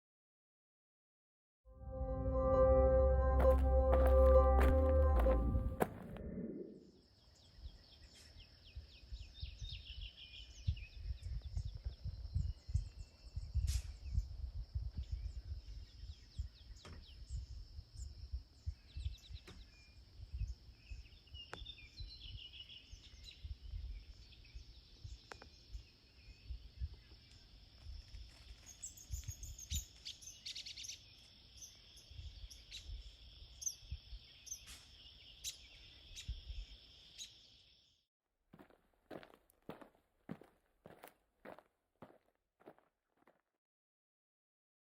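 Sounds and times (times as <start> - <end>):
songbirds chirping: 6.5 - 38.0
wind on microphone: 8.8 - 16.6.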